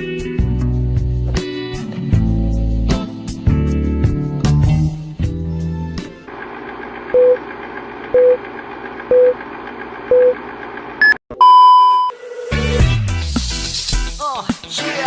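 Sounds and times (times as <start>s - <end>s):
electronic countdown beeps: 11.0s - 12.1s.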